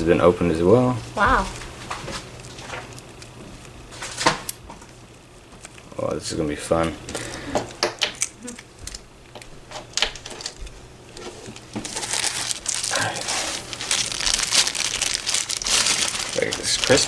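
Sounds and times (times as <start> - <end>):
items being handled clicking: 6.8 - 17.0
packaging crinkling: 8.0 - 17.0.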